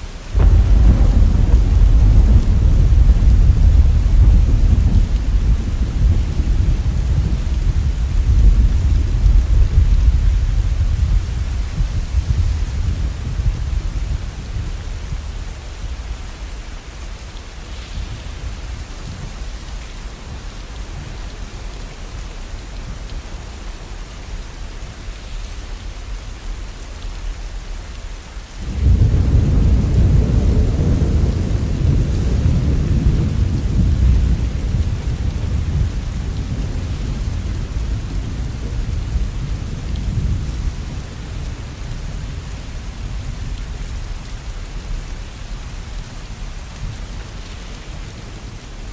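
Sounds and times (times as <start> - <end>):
steady rain: 0.0 - 48.9
deep rumble of thunder: 0.2 - 23.7, 28.5 - 48.9.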